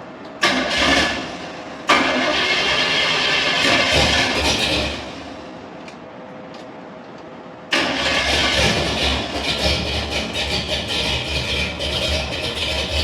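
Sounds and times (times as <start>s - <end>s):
engine cranking without starting: 0.4s - 5.2s, 7.7s - 13.0s.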